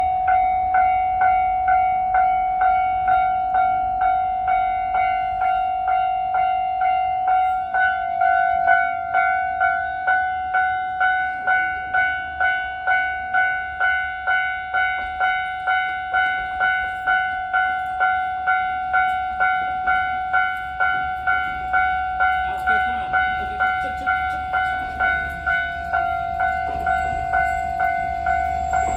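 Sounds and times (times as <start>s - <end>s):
railway crossing alarm bell: 0.0s - 28.9s.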